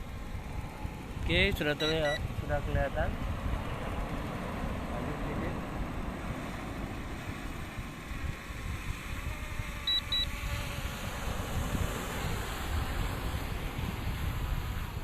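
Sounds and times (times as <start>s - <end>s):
strong wind buffeting microphone: 0.0s - 15.0s
short electronic beeps: 1.8s - 2.2s, 9.9s - 10.3s.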